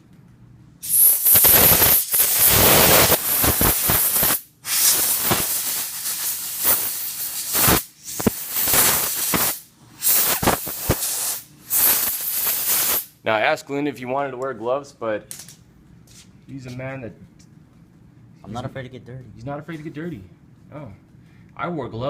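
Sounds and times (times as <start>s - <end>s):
compressed air hissing: 0.8s - 13.2s.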